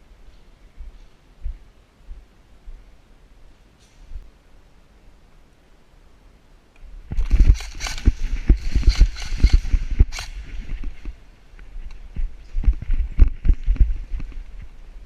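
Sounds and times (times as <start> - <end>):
footsteps: 0.2 - 2.8, 7.1 - 15.0.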